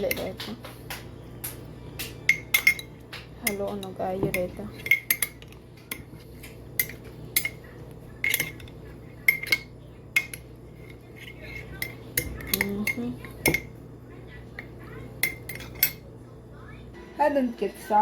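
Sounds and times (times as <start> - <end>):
spoon clinking against cup: 2.2 - 13.8, 14.6 - 16.1.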